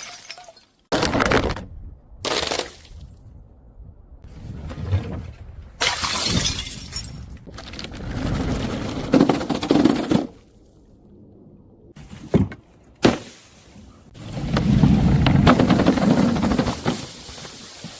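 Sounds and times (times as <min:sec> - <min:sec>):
glass bottles shattering: 0:00.0 - 0:00.8, 0:05.8 - 0:07.4.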